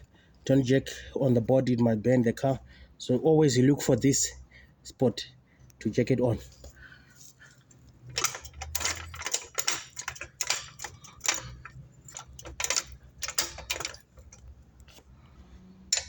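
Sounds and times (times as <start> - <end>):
low steady hum: 0.0 - 16.0
trolley jack clicking: 8.0 - 15.0.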